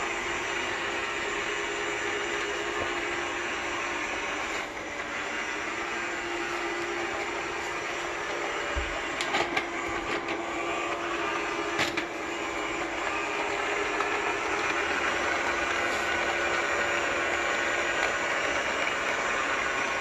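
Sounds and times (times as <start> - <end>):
robot vacuum whirring: 0.0 - 20.0.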